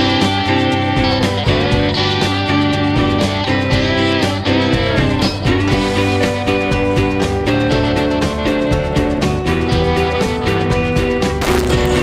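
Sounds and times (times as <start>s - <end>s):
guitar music with steady beat: 0.0s - 12.0s.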